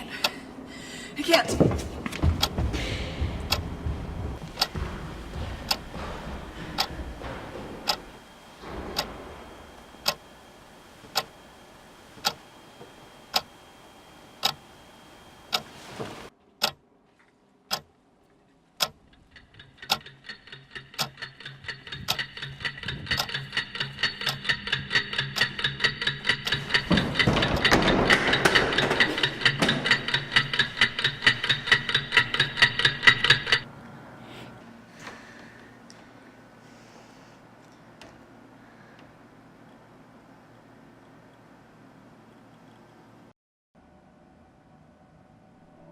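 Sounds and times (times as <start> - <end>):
clock ticking: 4.4 - 7.0, 18.8 - 33.6.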